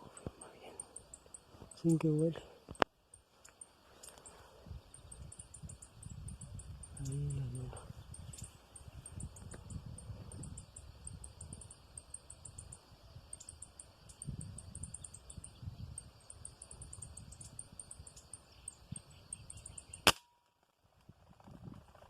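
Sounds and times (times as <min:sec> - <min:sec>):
insects chirping: 0:00.0 - 0:20.7
low rumble of wind: 0:00.0 - 0:22.0
air rifle shot: 0:20.0 - 0:20.3.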